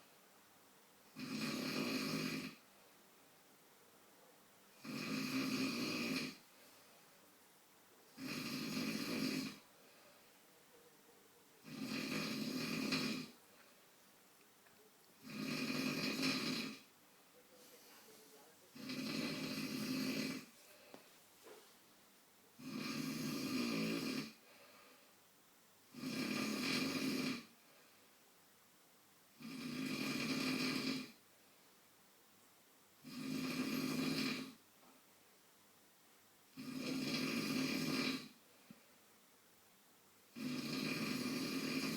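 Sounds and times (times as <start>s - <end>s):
man snoring: 1.1s - 2.6s, 4.7s - 6.4s, 8.2s - 9.7s, 11.6s - 13.4s, 15.2s - 16.9s, 18.7s - 20.5s, 22.6s - 24.5s, 25.9s - 27.5s, 29.4s - 31.2s, 33.0s - 34.6s, 36.5s - 38.4s, 40.3s - 41.9s.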